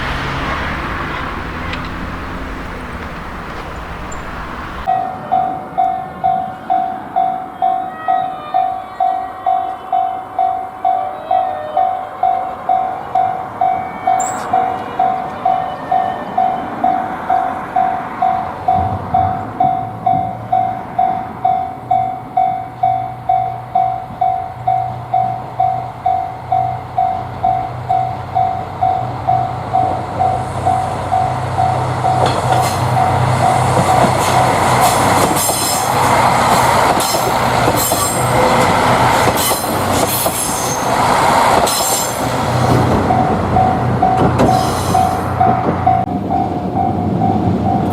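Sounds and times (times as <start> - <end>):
train running drone: 0.0 - 7.9, 8.5 - 47.9
train wheels clattering: 32.1 - 47.9.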